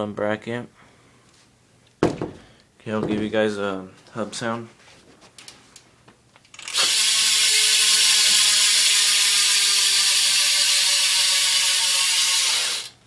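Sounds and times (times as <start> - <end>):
bike hub ratcheting buzz: 6.5 - 13.0.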